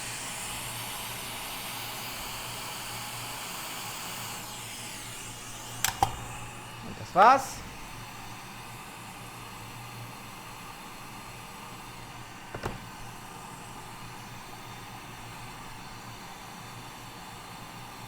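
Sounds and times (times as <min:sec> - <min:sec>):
airy hiss with low hum: 0:04.9 - 0:16.3
sharp click: 0:05.8 - 0:06.3.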